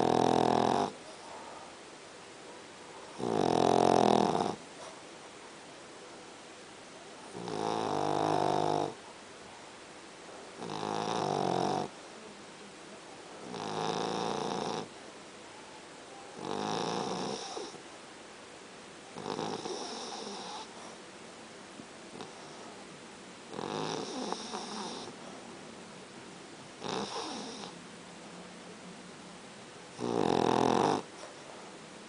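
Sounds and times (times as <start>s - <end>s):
dog snoring: 0.0s - 1.0s, 3.1s - 4.9s, 7.3s - 9.0s, 10.6s - 11.9s, 13.4s - 14.9s, 16.4s - 17.8s, 19.2s - 21.0s, 22.1s - 22.6s, 23.5s - 25.2s, 26.8s - 27.8s, 29.9s - 31.3s.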